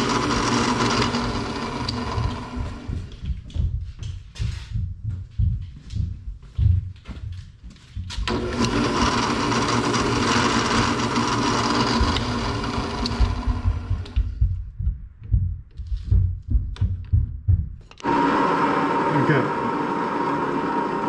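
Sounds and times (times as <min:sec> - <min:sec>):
drill press whining: 0:00.0 - 0:02.9, 0:08.2 - 0:14.3.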